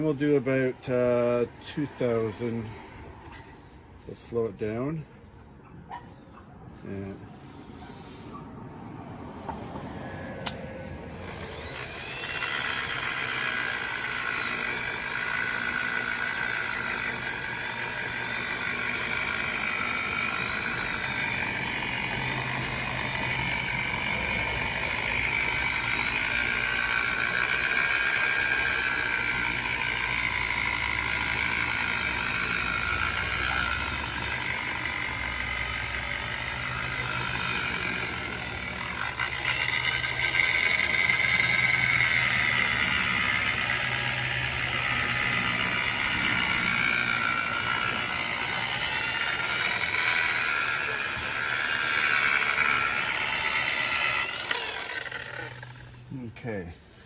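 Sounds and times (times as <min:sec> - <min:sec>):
electric polisher motor whine: 0:09.0 - 0:56.1.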